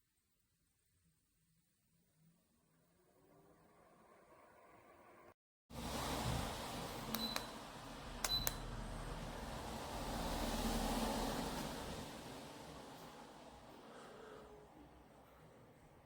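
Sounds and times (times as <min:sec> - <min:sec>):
ceiling fan whooshing: 0:05.7 - 0:16.0.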